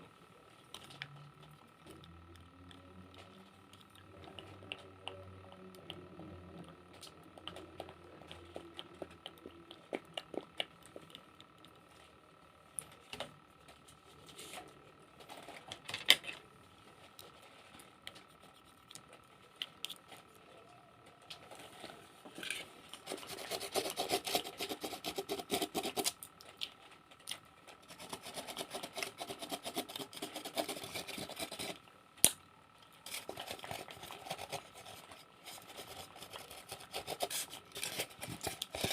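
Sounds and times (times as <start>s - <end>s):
close-up scratching and rubbing: 22.4s - 26.2s, 27.8s - 31.8s, 33.0s - 38.9s.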